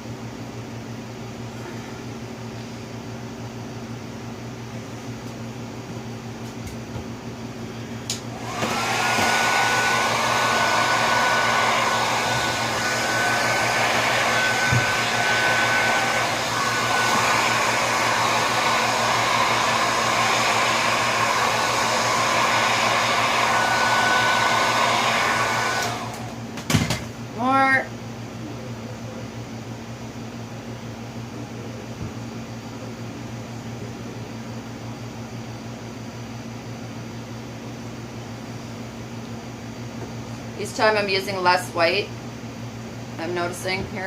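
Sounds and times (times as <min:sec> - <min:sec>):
hair dryer blowing: 0:08.1 - 0:27.6.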